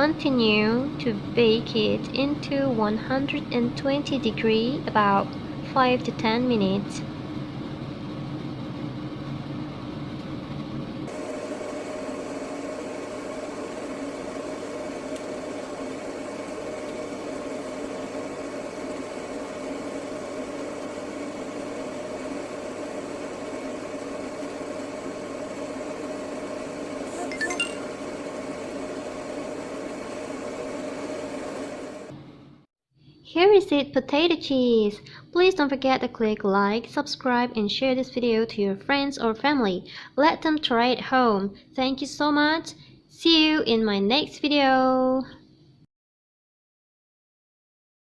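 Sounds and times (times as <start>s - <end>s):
oven humming: 0.0s - 32.6s.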